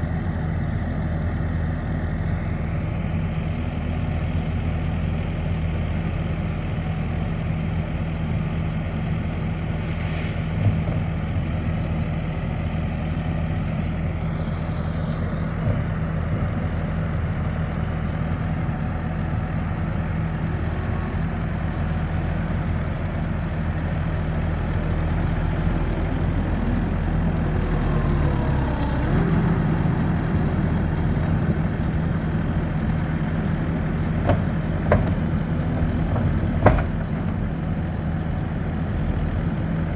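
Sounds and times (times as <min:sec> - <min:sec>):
loader engine running: 0:00.0 - 0:39.9
short knocks: 0:34.2 - 0:37.4.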